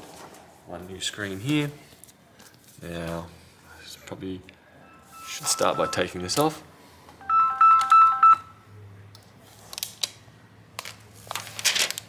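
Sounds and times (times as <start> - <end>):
electronic beeps: 4.8 - 6.2, 7.2 - 8.5
plastic film being peeled off: 11.2 - 12.0.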